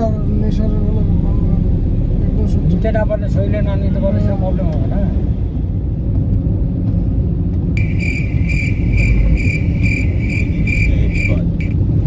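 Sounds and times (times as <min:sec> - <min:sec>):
car driving rumble: 0:00.0 - 0:12.0
high-pitched electronic beeping: 0:07.8 - 0:11.8.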